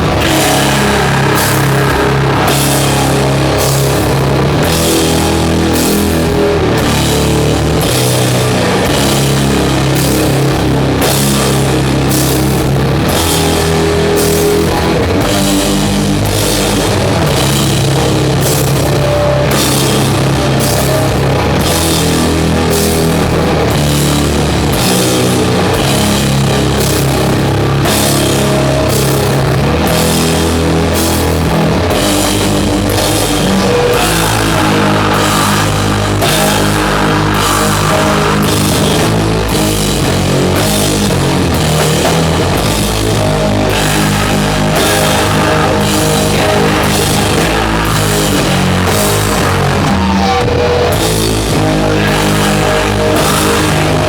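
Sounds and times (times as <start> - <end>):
slow drum and cymbal hits: 0.0 - 18.9
distorted guitars and bass: 0.0 - 54.0.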